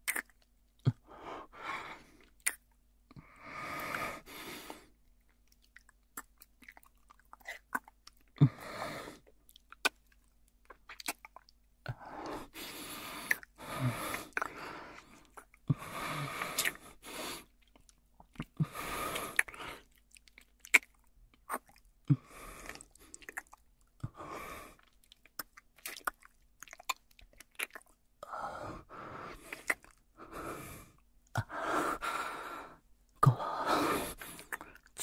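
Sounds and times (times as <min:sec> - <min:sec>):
soft breaths: 0:00.9 - 0:02.4, 0:03.1 - 0:05.0, 0:11.9 - 0:20.0, 0:22.1 - 0:23.4, 0:28.2 - 0:35.0
kissing lip smacks: 0:02.4 - 0:02.6, 0:16.5 - 0:16.8.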